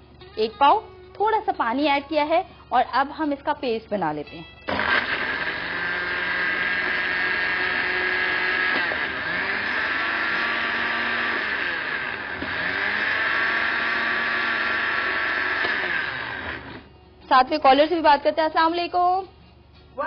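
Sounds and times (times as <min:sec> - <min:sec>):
electric blender running: 0:04.7 - 0:16.9.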